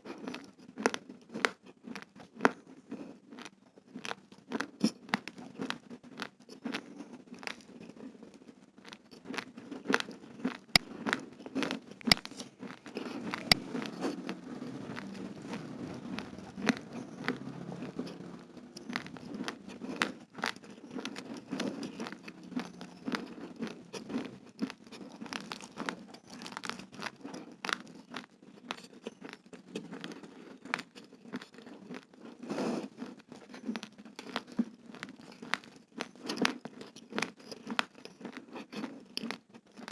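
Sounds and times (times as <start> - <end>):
mouth chewing: 0.0 - 39.9
raw rice grains cracking: 8.8 - 29.4.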